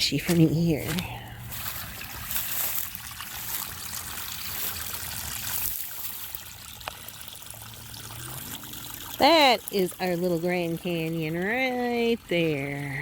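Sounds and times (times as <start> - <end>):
water trickling: 0.0 - 13.0.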